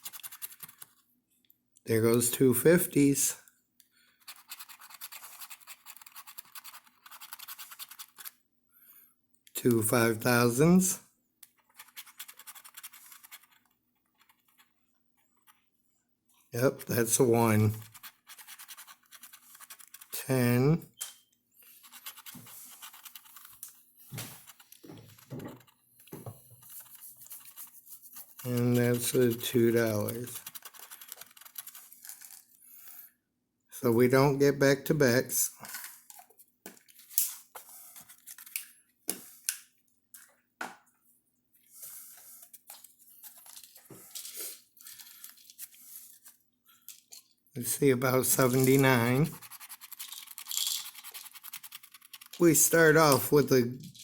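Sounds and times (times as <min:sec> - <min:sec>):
scratching lottery ticket: 0:00.0 - 0:01.0, 0:04.2 - 0:08.4, 0:11.5 - 0:14.8, 0:16.8 - 0:20.4, 0:21.6 - 0:25.8, 0:26.5 - 0:32.5, 0:47.9 - 0:53.5.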